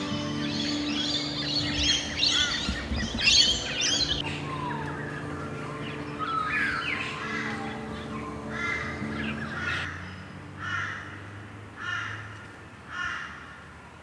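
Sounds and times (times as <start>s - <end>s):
low steady held tones: 0.0s - 9.9s
birds chirping and whistling: 0.0s - 10.3s.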